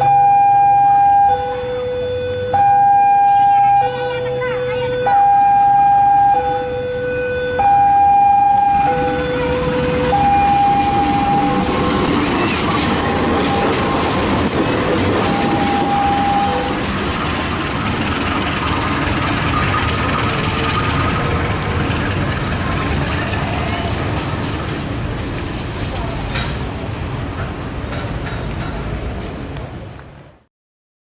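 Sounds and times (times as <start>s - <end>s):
two-tone warning signal: 0.0s - 14.2s, 14.9s - 16.9s
passing train rumble: 0.0s - 30.4s.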